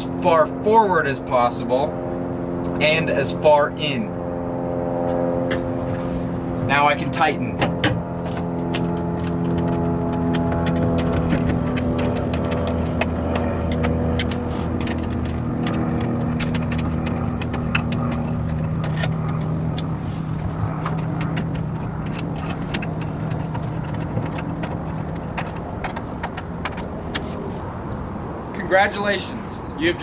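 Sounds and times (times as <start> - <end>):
truck engine hum: 0.0 - 30.0
small scattered clicks: 8.3 - 27.2.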